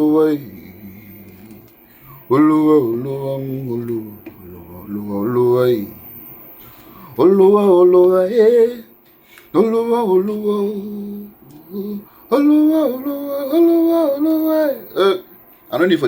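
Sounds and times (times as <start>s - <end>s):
person singing long notes: 0.0s - 6.2s, 9.6s - 15.2s.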